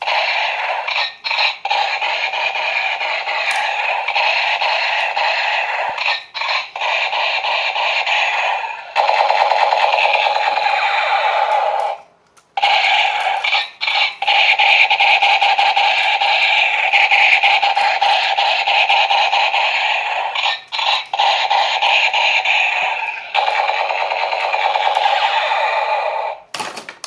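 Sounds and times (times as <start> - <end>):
toy gun buzzing rattle: 0.0 - 12.0, 12.6 - 26.4.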